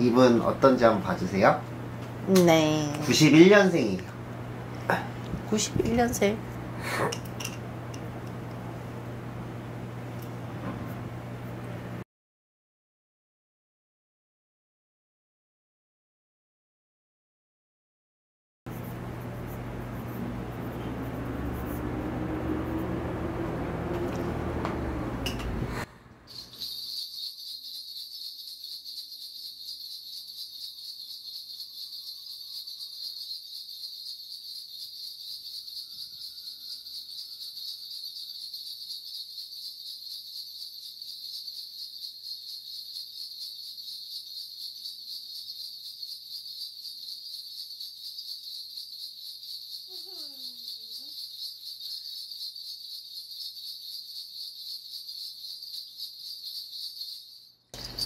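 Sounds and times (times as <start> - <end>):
ritual bells jingling: 26.3 - 44.8, 49.6 - 58.0.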